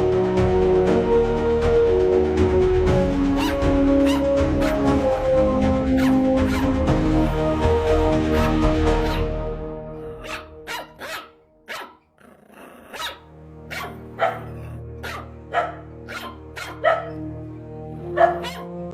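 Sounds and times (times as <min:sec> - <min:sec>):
background music: 0:00.0 - 0:18.9
puppy yapping: 0:03.4 - 0:04.8, 0:06.0 - 0:06.7, 0:08.4 - 0:09.3, 0:10.1 - 0:17.2, 0:18.1 - 0:18.7.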